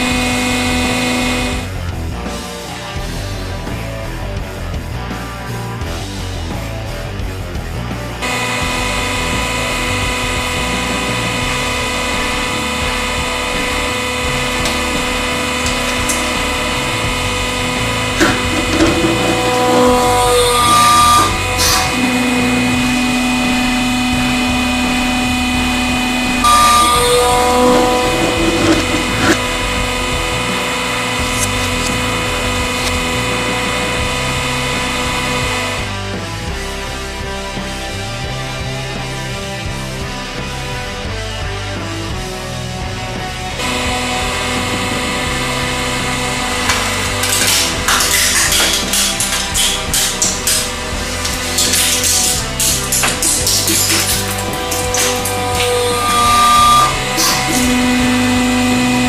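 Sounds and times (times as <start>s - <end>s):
hydraulic pump humming: 0.0s - 2.6s, 8.1s - 36.4s, 42.9s - 59.0s.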